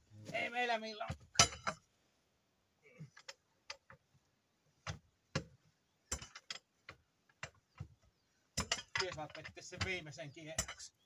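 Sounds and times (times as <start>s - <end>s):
hand tools and metal parts clicking: 4.8s - 11.0s.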